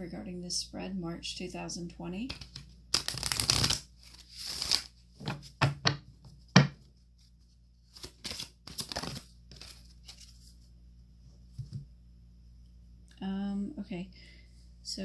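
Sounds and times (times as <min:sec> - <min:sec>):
cards shuffling swish: 0:02.3 - 0:05.4.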